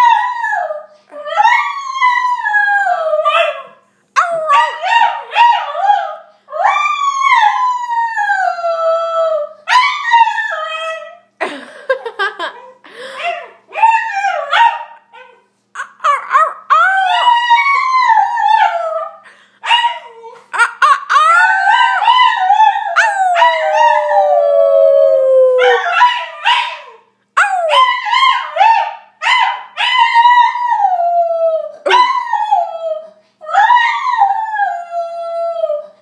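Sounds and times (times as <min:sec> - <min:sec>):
dog howling: 0:19.9 - 0:28.8.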